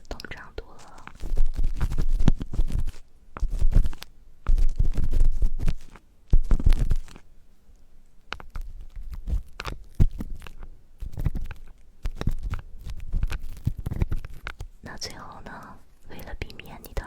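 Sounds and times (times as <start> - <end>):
scratching and rubbing on microphone: 0.0 - 7.2, 8.3 - 17.0
light scrapes and taps: 8.3 - 14.7.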